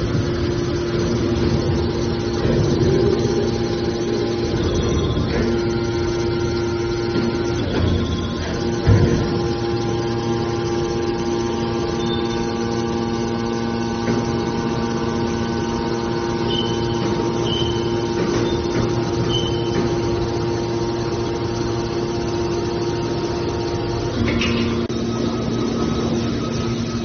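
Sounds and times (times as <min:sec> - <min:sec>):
baler motor and pump humming: 0:00.0 - 0:27.0
short high squeaks: 0:19.2 - 0:19.8.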